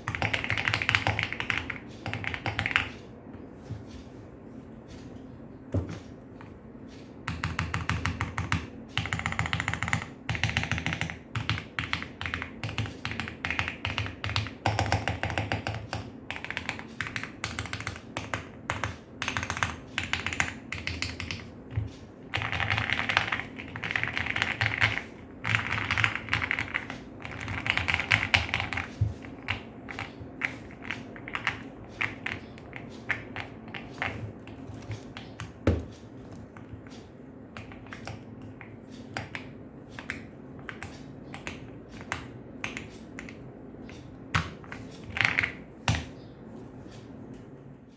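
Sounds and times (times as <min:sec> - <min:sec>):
mechanical keyboard typing: 0:00.0 - 0:02.9, 0:07.3 - 0:21.5, 0:22.3 - 0:36.0, 0:44.3 - 0:46.1.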